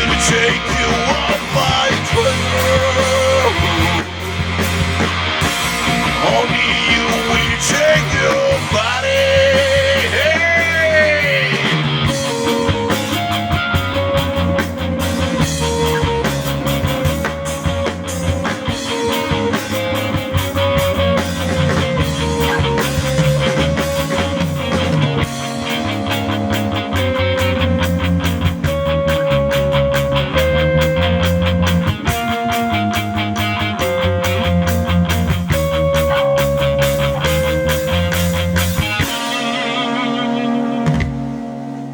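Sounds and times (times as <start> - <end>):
bent lead guitar notes: 0.0 - 41.9
rock band playing live: 0.0 - 41.9.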